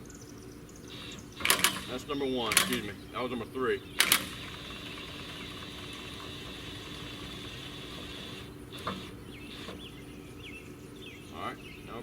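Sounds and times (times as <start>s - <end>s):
impact wrench running: 0.9s - 3.0s, 4.0s - 10.0s.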